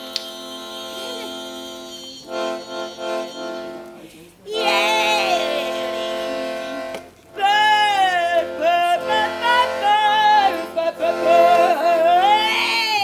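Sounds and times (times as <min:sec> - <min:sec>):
accordion chords: 0:00.0 - 0:13.0
person singing: 0:04.4 - 0:13.0.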